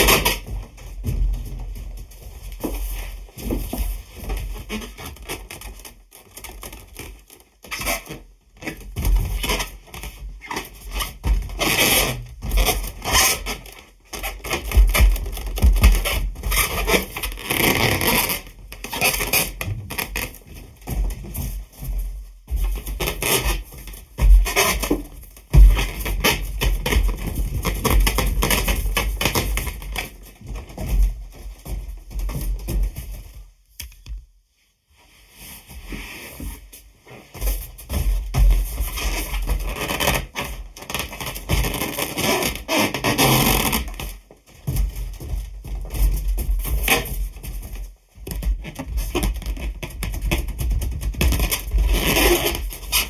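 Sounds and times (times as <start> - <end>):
balloon squeaking and rubbing: 0.0 - 0.4, 10.4 - 20.3, 23.0 - 23.6, 24.3 - 25.0, 39.0 - 44.0, 51.2 - 53.0.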